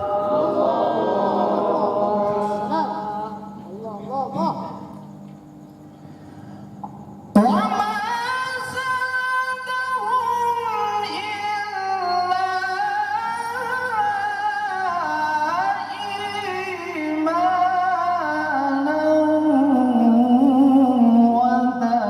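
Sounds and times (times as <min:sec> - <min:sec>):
person chanting melodic recitation: 0:07.4 - 0:22.0.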